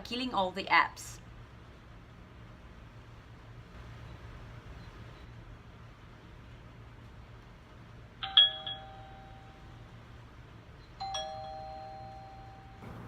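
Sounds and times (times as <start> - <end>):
electronic doorbell chime: 8.2 - 9.9, 11.0 - 12.8.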